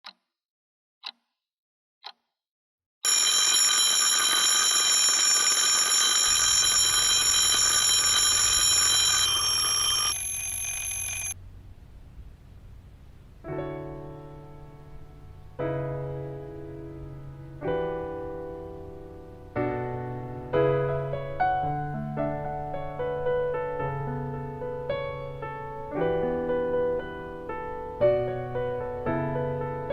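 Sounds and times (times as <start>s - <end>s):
electronic alarm ringing: 3.0s - 11.4s
soft electric piano chords: 13.4s - 29.9s.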